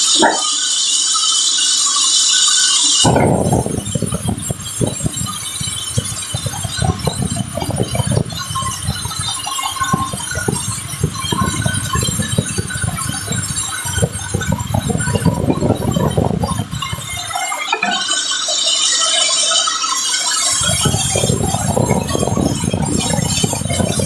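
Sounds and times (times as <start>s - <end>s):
sawmill machinery running: 0.0s - 24.0s
clatter of knocks and rattles: 3.0s - 18.3s.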